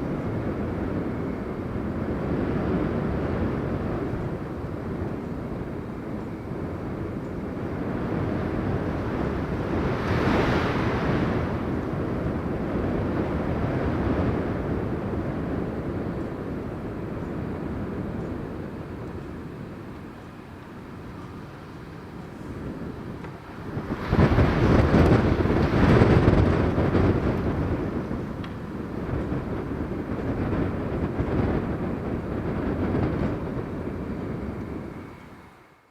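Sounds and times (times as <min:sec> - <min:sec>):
train rumbling past: 0:17.0 - 0:35.9.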